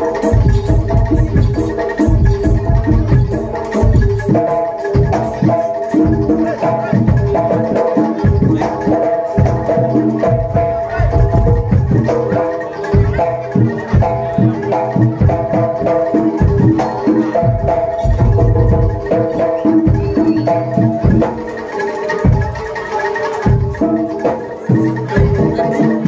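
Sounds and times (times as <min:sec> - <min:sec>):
heavy drum strokes: 0:00.0 - 0:26.0
metal percussion strikes: 0:00.0 - 0:26.0.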